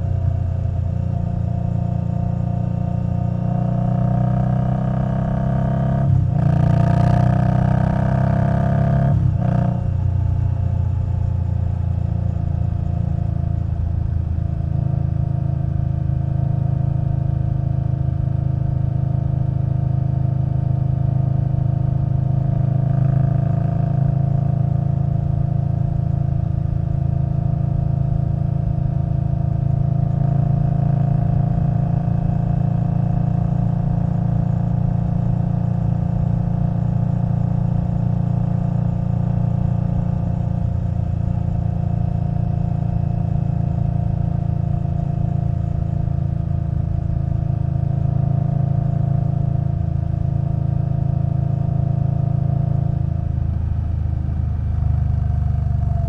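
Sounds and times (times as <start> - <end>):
motorcycle engine cruising: 0.0 - 56.0.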